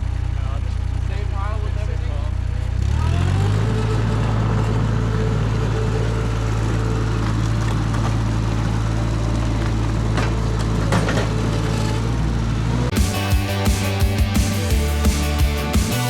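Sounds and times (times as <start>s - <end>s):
skid steer engine at high revs: 2.6s - 16.0s.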